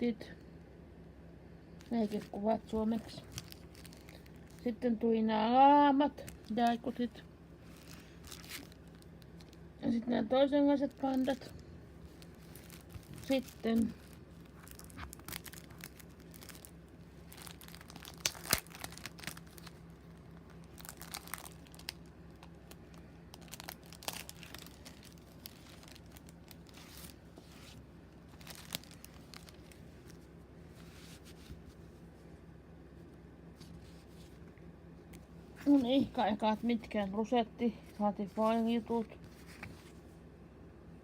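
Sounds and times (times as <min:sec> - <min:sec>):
faint steady hum: 0:00.0 - 0:41.0
paper and plastic crinkling: 0:01.8 - 0:04.8, 0:06.1 - 0:10.0, 0:10.7 - 0:32.0.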